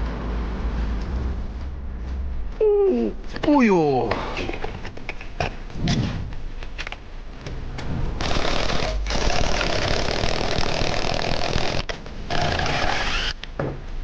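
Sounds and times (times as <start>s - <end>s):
power tool motor running: 8.2s - 13.4s.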